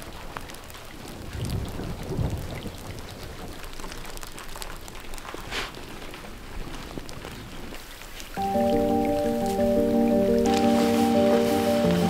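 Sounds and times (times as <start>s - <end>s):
rain drops falling: 0.0s - 12.0s
background music sustained chords: 8.4s - 12.0s.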